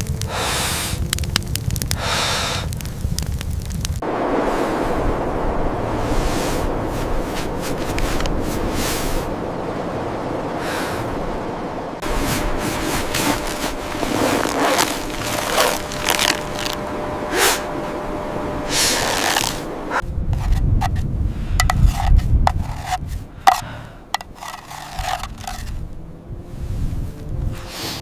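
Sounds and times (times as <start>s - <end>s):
low rumble: 0.0s - 27.6s
rough scraping strokes: 12.0s - 17.8s, 18.7s - 25.8s.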